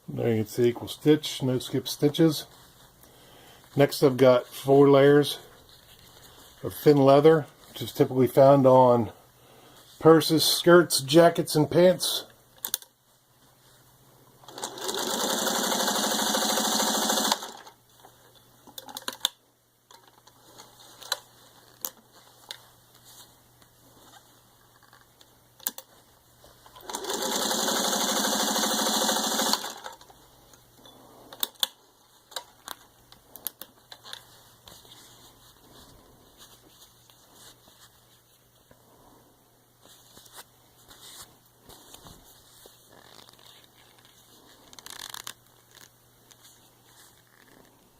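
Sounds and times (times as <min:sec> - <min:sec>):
sewing machine stitching: 0:14.5 - 0:17.7, 0:26.8 - 0:30.0.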